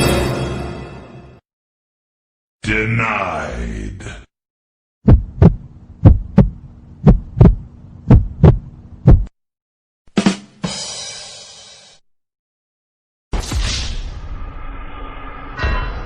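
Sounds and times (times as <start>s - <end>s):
heartbeat thumps: 5.0s - 9.3s
steady low hum: 5.1s - 9.3s.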